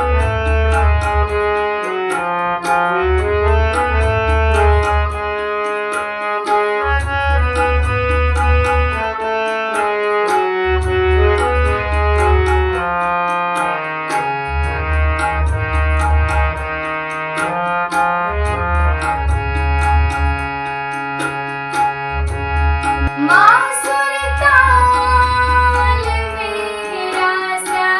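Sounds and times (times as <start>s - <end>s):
keyboard melody: 0.0s - 27.9s
sustained organ-like chords: 0.1s - 26.3s.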